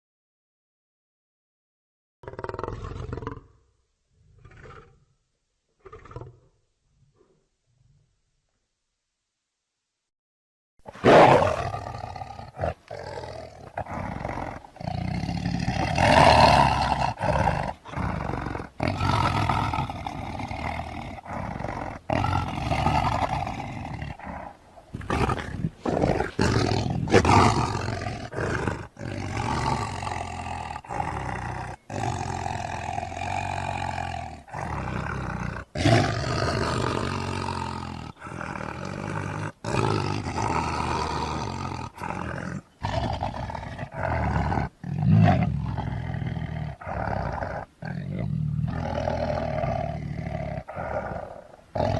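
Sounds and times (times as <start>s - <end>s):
lion roaring and growling: 10.9s - 51.9s.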